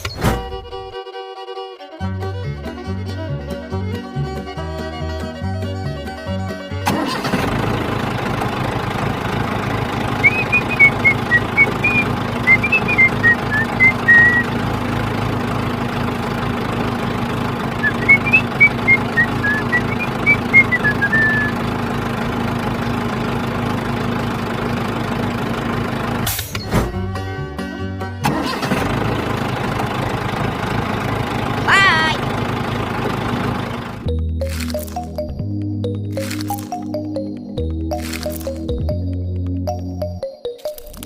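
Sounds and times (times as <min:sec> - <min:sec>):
high whistled notes: 0:10.2 - 0:14.5, 0:17.8 - 0:21.6.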